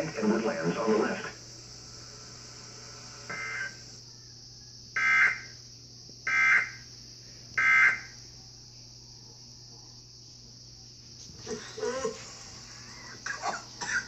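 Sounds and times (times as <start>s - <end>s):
warbling data tones: 0.0s - 4.0s
mains hum and hiss: 0.0s - 14.0s.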